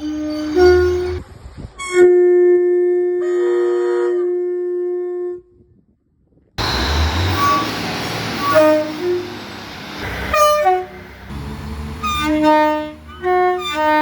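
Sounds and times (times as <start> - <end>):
train horn sounding: 0.0 - 5.4, 6.6 - 14.0
rush of noise: 6.6 - 12.2.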